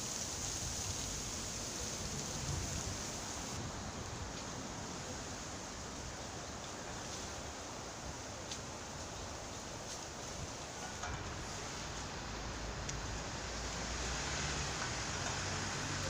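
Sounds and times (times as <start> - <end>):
wind rustling leaves: 0.0 - 16.0
wind buffeting microphone: 1.9 - 4.3.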